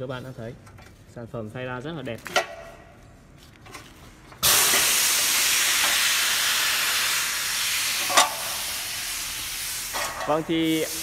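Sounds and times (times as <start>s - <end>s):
compressed air hissing: 4.4s - 11.0s.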